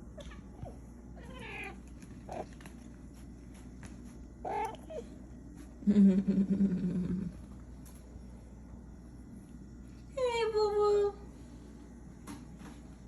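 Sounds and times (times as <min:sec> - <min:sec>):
cats meowing: 0:00.2 - 0:02.5, 0:04.4 - 0:05.1.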